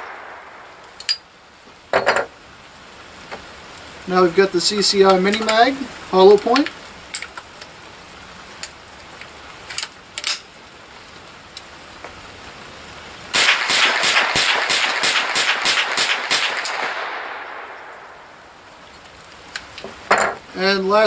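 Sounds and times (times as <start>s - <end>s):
rifle firing rapid shots: 13.4s - 17.7s.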